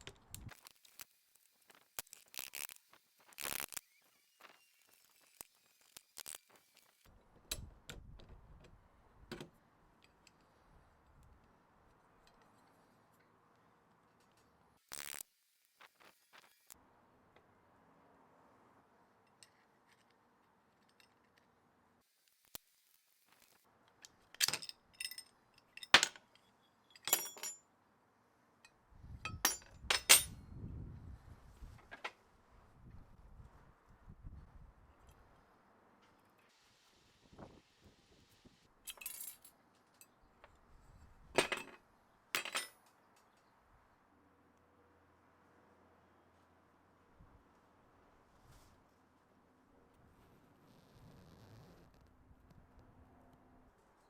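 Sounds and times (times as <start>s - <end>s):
metal parts clinking: 24.4s - 27.6s, 29.3s - 30.3s, 42.4s - 42.9s.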